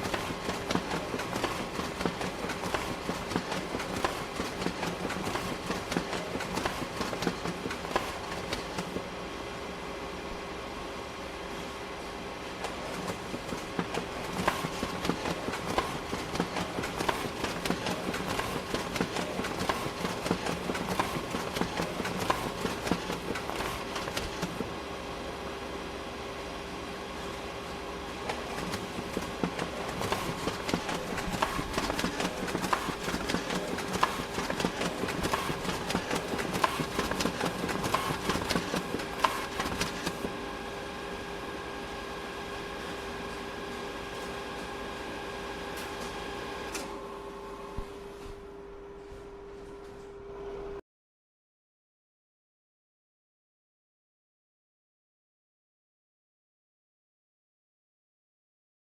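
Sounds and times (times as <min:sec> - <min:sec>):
photocopier mechanical clacking: 0:00.0 - 0:09.0, 0:12.6 - 0:24.7, 0:28.3 - 0:40.3
photocopier motor hum: 0:00.0 - 0:50.8
sheet feed clack: 0:28.3 - 0:40.2
photocopier clattering: 0:29.4 - 0:40.1.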